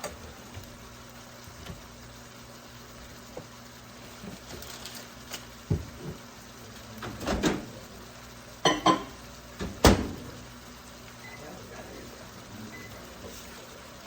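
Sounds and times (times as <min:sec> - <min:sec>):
kitchenware knocks and clinks: 0:08.7 - 0:09.1.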